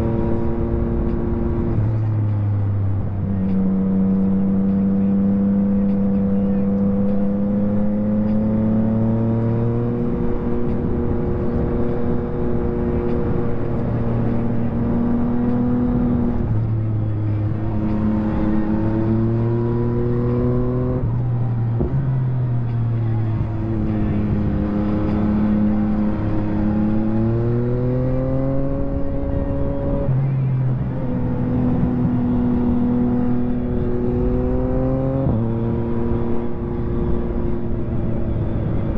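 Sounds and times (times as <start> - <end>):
motorcycle engine revving: 22.7 - 30.2, 30.9 - 38.9.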